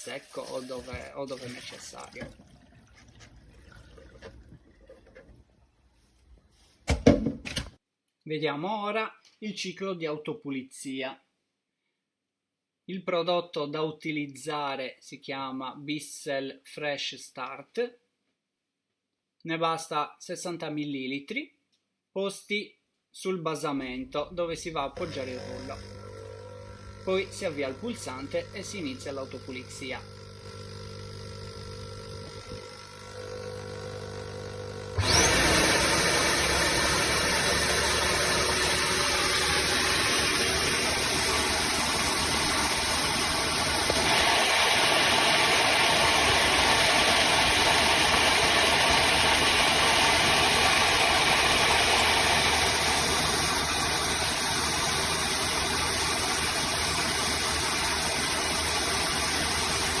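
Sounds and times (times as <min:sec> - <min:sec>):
floor cleaner motor whine: 0:25.0 - 0:28.3, 0:30.2 - 1:00.0.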